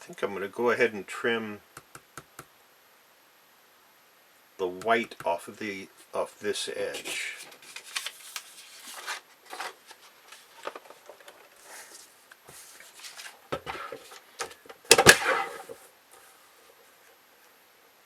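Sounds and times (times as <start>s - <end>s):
paper rustling: 6.9s - 14.4s.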